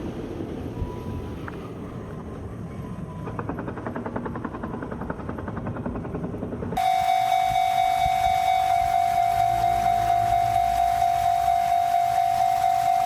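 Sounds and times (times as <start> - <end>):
low rumble with fast clicking: 0.0 - 6.8
railroad crossing warning bell: 6.8 - 13.0.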